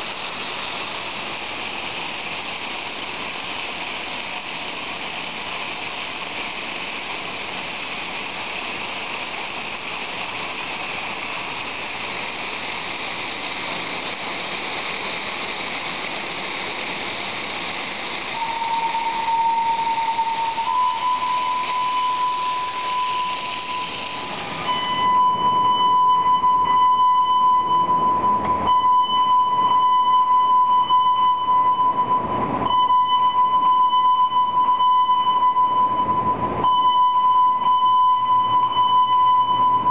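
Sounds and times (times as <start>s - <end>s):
fire alarm bell ringing: 18.4s - 39.9s.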